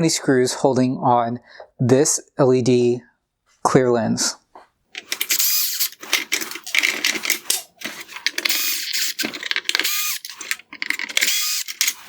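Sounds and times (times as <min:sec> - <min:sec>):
electric screwdriver motor whining: 0:05.0 - 0:12.0
screwdriver bit and screws rattling: 0:05.0 - 0:12.0.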